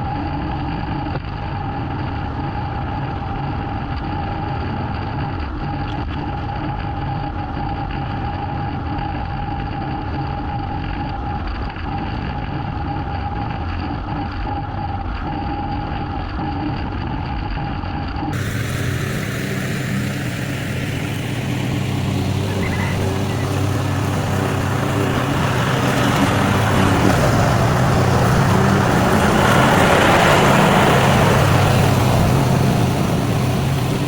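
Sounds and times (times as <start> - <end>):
constant whine: 0.0 - 34.0
small gasoline engine running: 18.3 - 34.0.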